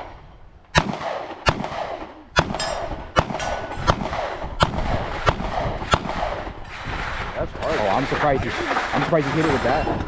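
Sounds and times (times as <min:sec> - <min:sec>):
handgun shots: 0:00.7 - 0:06.8.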